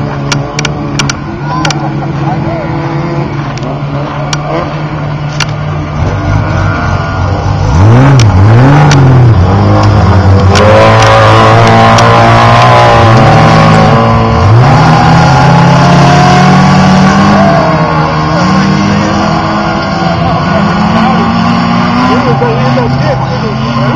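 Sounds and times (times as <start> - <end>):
truck engine revving: 0.0 - 23.9.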